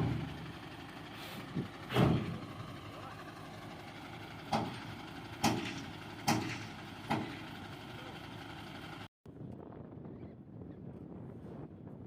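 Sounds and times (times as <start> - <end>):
truck engine running: 0.0 - 9.1
sharp engine knocks: 1.5 - 2.4, 4.4 - 7.6.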